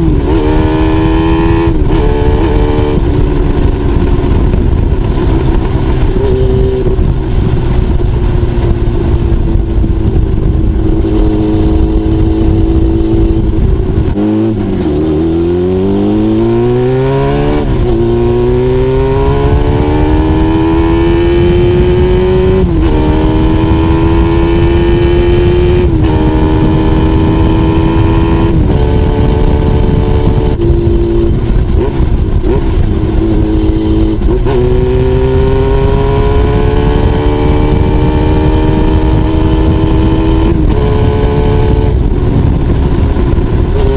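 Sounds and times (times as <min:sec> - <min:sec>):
motorcycle engine accelerating through gears: 0:00.0 - 0:43.9.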